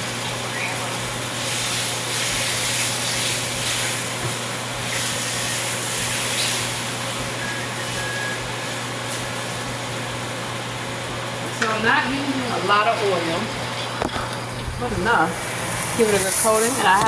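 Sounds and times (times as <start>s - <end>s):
stovetop hiss and whoosh: 0.0s - 10.4s, 15.1s - 17.0s.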